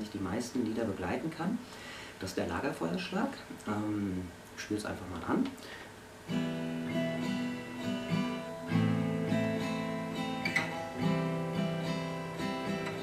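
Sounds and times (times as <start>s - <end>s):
acoustic guitar strumming: 6.2s - 13.0s.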